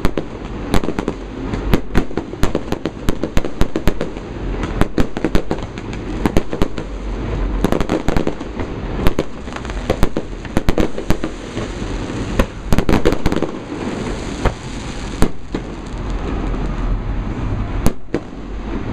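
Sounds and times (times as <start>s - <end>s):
fireworks bangs and crackles: 0.0s - 18.9s
low rumble: 5.6s - 18.9s.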